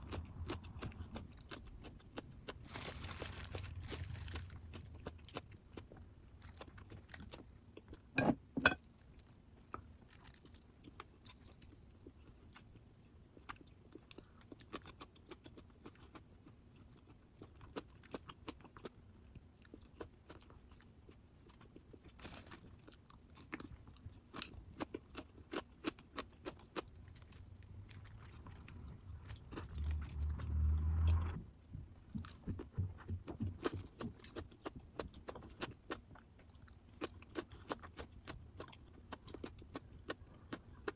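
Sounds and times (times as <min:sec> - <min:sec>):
chewing and crunchy bites: 0:00.0 - 0:08.2, 0:08.8 - 0:40.9
low rumble: 0:27.2 - 0:32.0.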